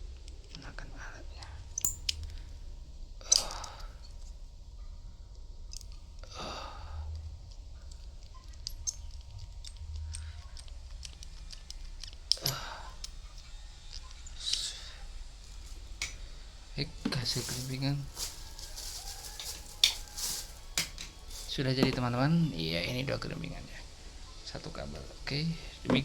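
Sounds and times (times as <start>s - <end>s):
rustling and handling ticks: 7.0s - 26.0s
crimping tool click: 16.0s - 16.2s.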